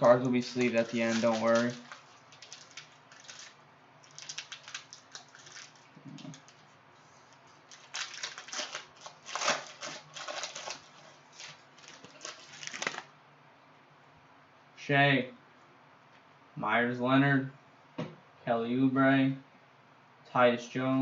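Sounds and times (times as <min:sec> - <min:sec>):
wrapper rustling: 0:00.0 - 0:06.7, 0:07.3 - 0:13.1.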